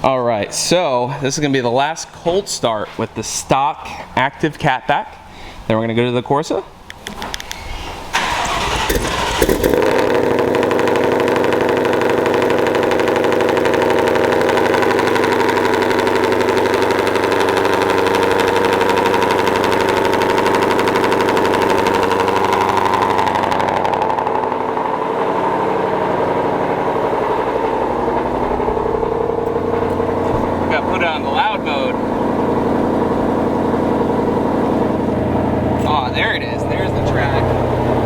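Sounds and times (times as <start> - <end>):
car engine fast idle: 8.1 - 38.0.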